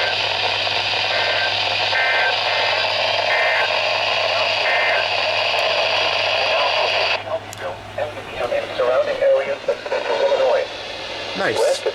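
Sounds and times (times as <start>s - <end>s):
two-tone data bursts: 0.0s - 7.2s
radio static hiss: 0.0s - 11.9s.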